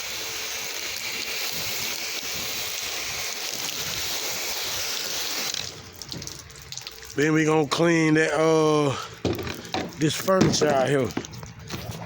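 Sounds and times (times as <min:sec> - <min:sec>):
pressure washer spraying water: 0:00.0 - 0:06.5.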